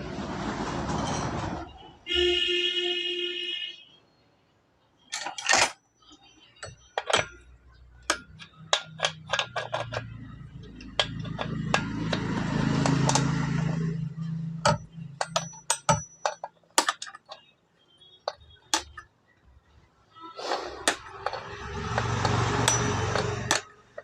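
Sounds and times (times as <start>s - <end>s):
metallic clicks of tools: 5.1s - 5.8s, 6.6s - 17.5s, 20.8s - 24.0s.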